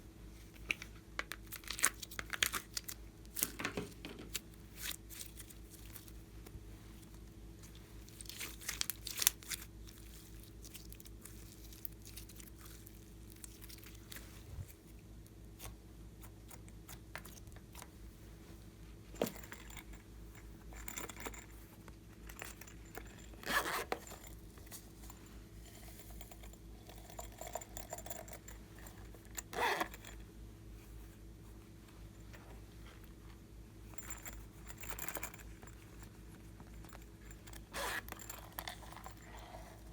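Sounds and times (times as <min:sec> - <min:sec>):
steady low hum: 0:00.0 - 0:39.9
crinkling and tearing: 0:08.1 - 0:14.8.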